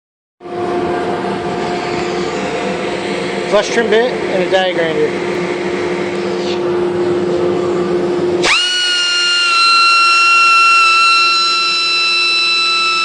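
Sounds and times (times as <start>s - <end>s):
die grinder grinding and whining: 8.4s - 13.0s.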